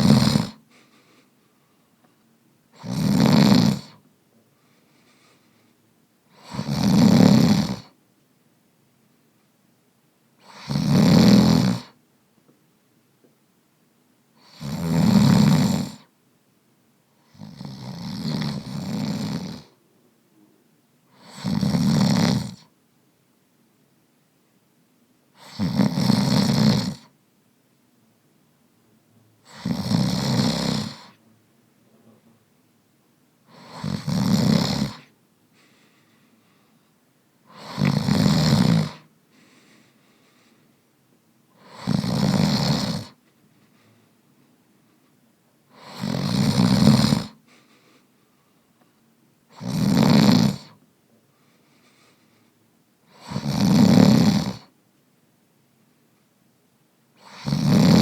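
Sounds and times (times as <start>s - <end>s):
man snoring: 0.0s - 0.6s, 2.7s - 4.0s, 6.3s - 8.0s, 10.4s - 12.0s, 14.4s - 16.1s, 17.2s - 19.8s, 21.1s - 22.7s, 25.4s - 27.1s, 29.4s - 31.2s, 33.5s - 35.1s, 37.5s - 39.1s, 41.6s - 43.2s, 45.7s - 47.4s, 49.5s - 50.8s, 53.1s - 54.7s, 57.2s - 58.0s.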